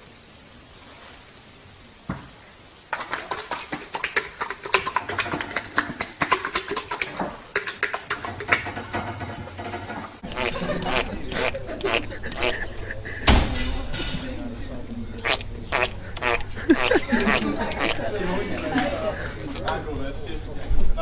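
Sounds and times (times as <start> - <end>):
animal chattering calls: 10.2 - 13.4, 15.2 - 18.1.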